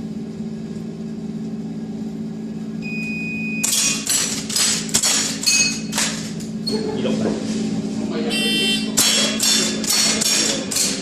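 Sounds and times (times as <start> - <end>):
shot timer beep: 2.8 - 3.8, 8.3 - 9.4.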